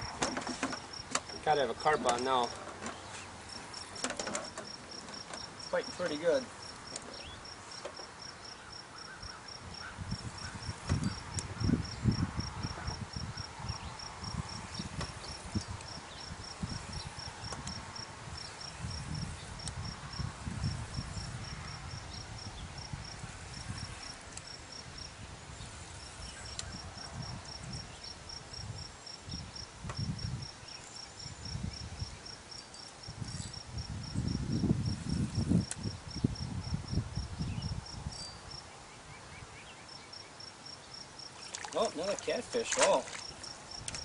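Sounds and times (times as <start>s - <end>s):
insect chirping: 0.3s - 44.0s
wind buffeting microphone: 9.2s - 32.3s, 33.0s - 38.6s.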